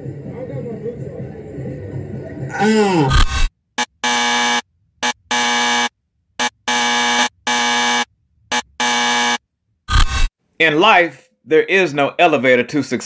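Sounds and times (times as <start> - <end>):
electronic buzzer: 3.1 - 10.3.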